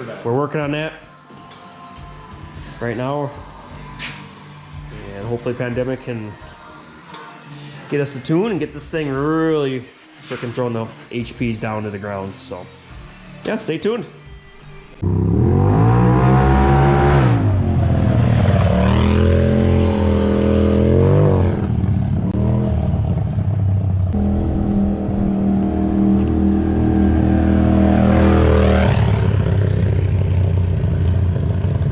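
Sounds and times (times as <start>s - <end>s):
engine revving through loud exhaust: 15.0s - 31.9s.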